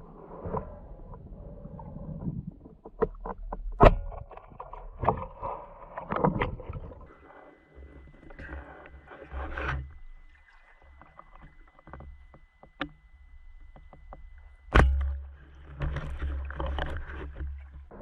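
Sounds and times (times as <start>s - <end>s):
underwater rumbling: 0.0s - 18.0s
faint high whine: 4.0s - 18.0s
small underwater clicks: 7.7s - 18.0s.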